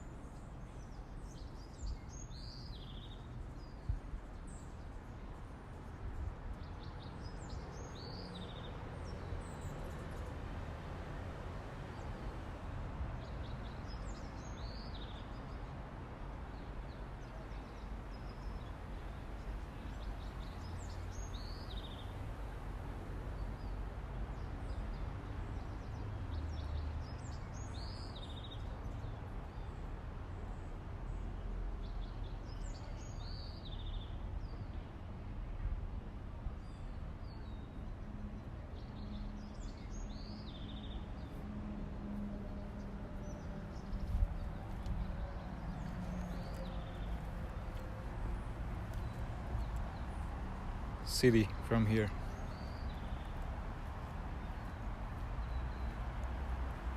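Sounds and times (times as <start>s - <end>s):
distant traffic rumble: 39.0s - 56.9s.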